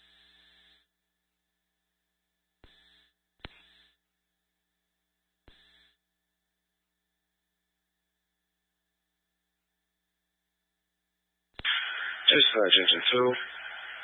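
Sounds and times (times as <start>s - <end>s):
bursts of static: 0.0s - 0.9s, 2.6s - 4.0s, 5.4s - 6.0s, 11.6s - 14.0s.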